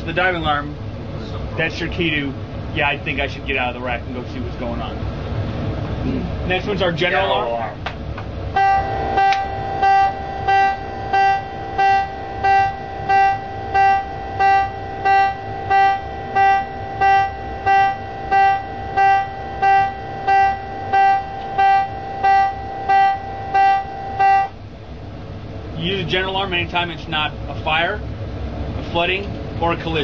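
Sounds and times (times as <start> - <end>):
general alarm pulsing tone: 8.5 - 24.6.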